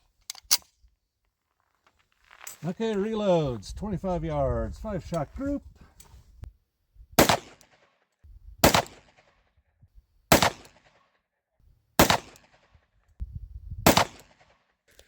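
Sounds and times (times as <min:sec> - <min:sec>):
pistol shots: 0:07.2 - 0:07.6, 0:08.6 - 0:09.2, 0:10.3 - 0:10.9, 0:12.0 - 0:12.6, 0:13.9 - 0:14.4.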